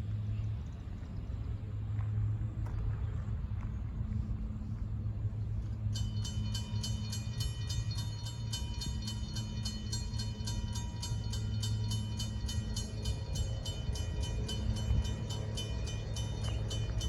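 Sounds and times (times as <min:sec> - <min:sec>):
diesel locomotive rumble: 0:00.0 - 0:17.0
grade-crossing bell ringing: 0:05.8 - 0:17.0.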